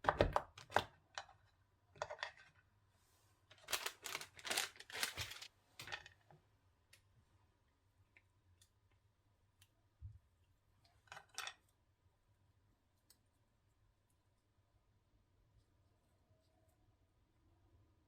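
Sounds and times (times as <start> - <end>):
crinkling and rustling: 3.4 - 6.4.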